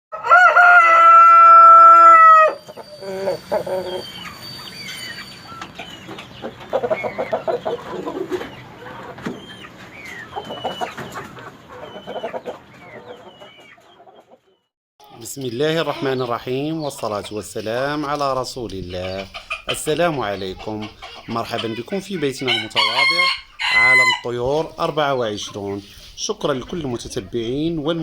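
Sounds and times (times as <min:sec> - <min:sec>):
rooster crowing: 0:00.1 - 0:04.2, 0:22.5 - 0:24.3
chickens clucking: 0:02.2 - 0:28.0
high chirps: 0:02.5 - 0:06.4.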